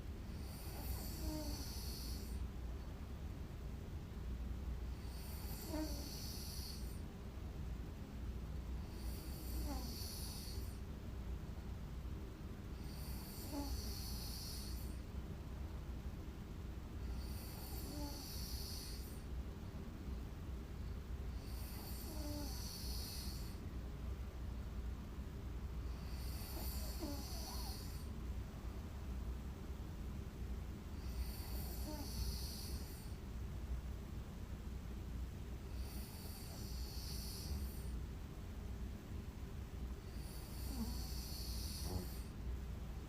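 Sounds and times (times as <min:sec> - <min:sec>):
steady low hum: 0:00.0 - 0:43.0
woman snoring: 0:00.3 - 0:02.4, 0:05.0 - 0:07.0, 0:08.8 - 0:10.8, 0:12.7 - 0:15.0, 0:17.0 - 0:19.2, 0:21.3 - 0:23.6, 0:25.9 - 0:28.1, 0:31.0 - 0:33.2, 0:35.7 - 0:37.9, 0:40.1 - 0:42.3.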